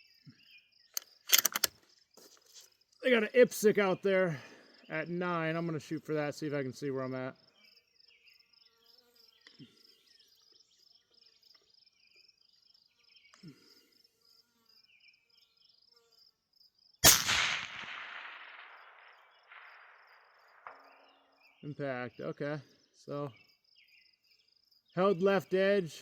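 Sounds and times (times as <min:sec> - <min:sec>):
insects chirping: 0:00.0 - 0:26.0
rifle shot echoing: 0:17.0 - 0:21.5.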